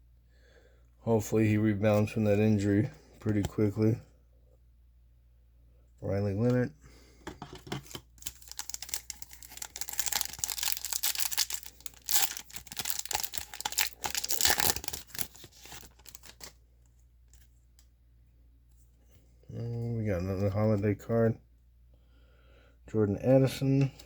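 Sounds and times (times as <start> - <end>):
plastic wrapper crinkling: 7.8 - 16.6.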